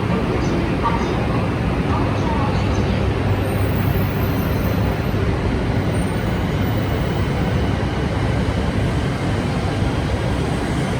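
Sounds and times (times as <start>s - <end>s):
train rumbling at platform: 0.0s - 10.9s.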